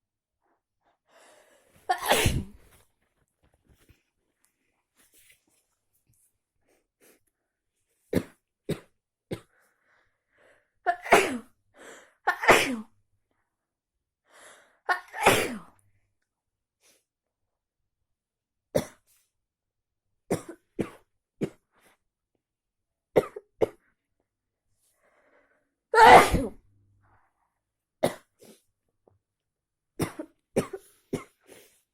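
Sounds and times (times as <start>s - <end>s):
person coughing: 1.9s - 2.6s, 26.0s - 26.6s
person sneezing: 1.9s - 2.7s, 10.9s - 11.5s, 12.3s - 12.9s, 14.9s - 15.7s, 26.0s - 26.6s.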